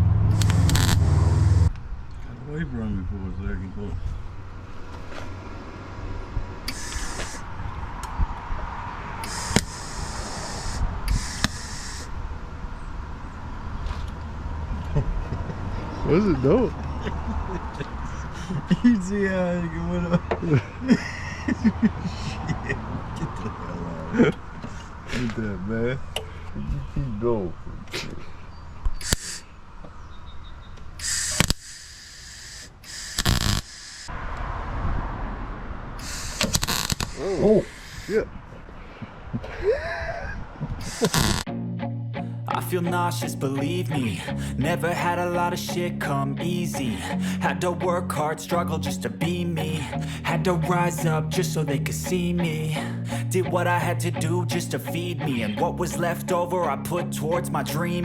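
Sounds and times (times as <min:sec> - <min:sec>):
sharp clicks: 0:00.3 - 0:01.1, 0:09.2 - 0:10.0, 0:11.1 - 0:11.9, 0:30.8 - 0:31.9, 0:32.9 - 0:34.0, 0:36.1 - 0:37.2
welder bursts on sheet metal: 0:00.3 - 0:01.6, 0:31.0 - 0:34.1.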